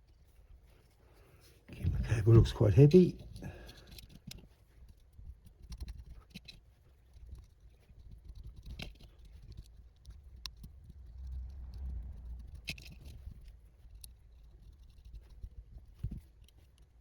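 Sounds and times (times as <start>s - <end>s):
low handling rumble: 10.3s - 13.8s.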